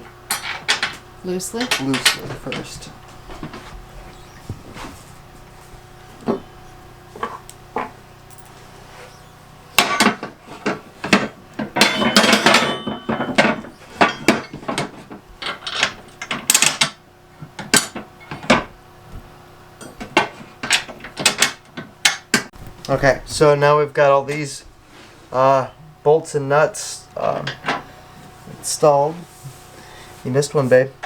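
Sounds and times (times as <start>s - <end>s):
metal parts clinking: 0.3s - 2.8s, 9.8s - 17.0s.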